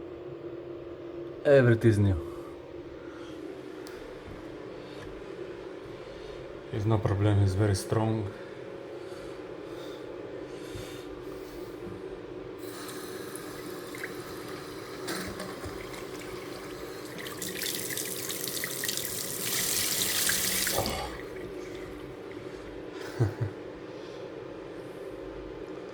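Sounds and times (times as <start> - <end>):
faucet water running into sink: 12.6 - 21.9.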